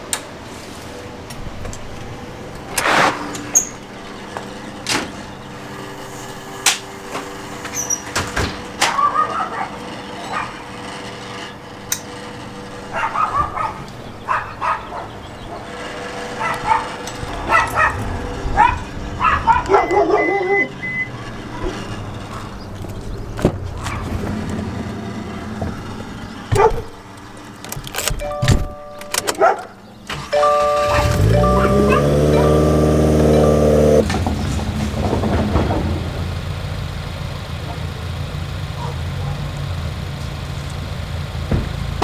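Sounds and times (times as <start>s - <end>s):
mechanical hum: 0.0s - 37.2s
dog barking: 8.8s - 10.7s, 12.9s - 20.8s, 26.5s - 26.9s, 29.3s - 29.8s, 31.4s - 32.7s, 38.7s - 39.6s
sharp clicks and knocks: 25.6s - 29.8s.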